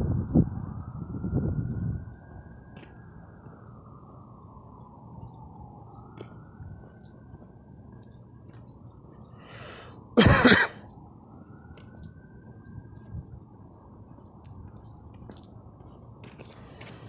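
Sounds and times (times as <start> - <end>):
short breath: 9.4 - 10.0
loud harsh cough: 10.2 - 10.9.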